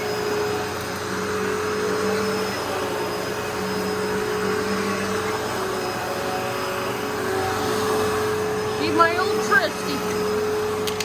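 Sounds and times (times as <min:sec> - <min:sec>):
vacuum cleaner running: 0:00.0 - 0:11.0.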